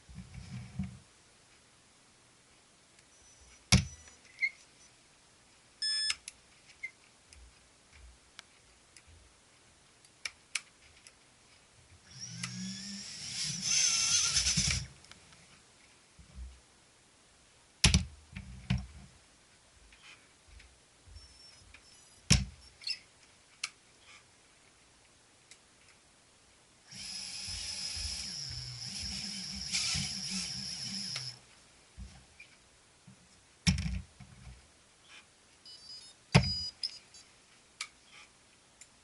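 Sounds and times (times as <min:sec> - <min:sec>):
drone motors whining: 0:12.1 - 0:14.9, 0:26.9 - 0:31.4.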